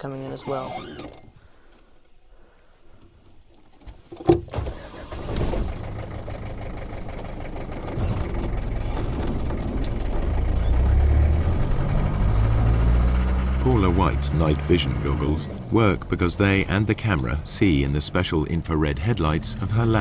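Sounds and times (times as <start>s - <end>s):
engine starting and pulling away: 4.5s - 20.0s.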